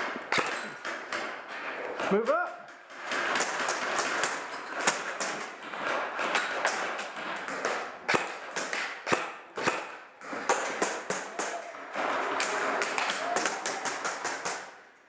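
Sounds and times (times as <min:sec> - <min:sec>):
airsoft gun shots: 0:00.0 - 0:01.3, 0:06.2 - 0:14.8
pellets striking hard surfaces: 0:00.0 - 0:14.9.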